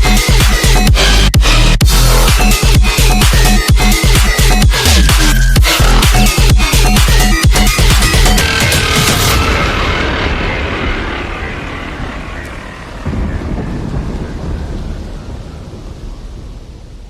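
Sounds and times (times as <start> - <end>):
rolling rumble of thunder: 8.1 - 17.0.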